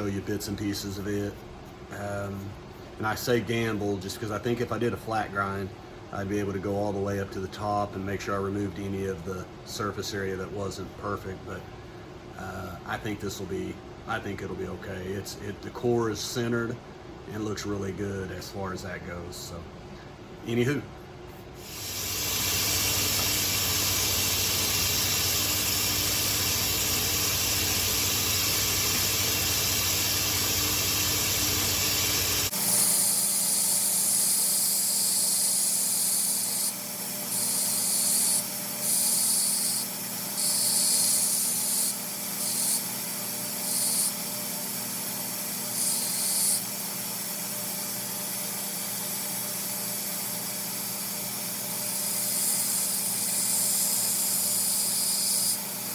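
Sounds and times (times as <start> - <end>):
belt grinder grinding steel: 21.6 - 55.9
grinder motor hum: 21.6 - 55.9.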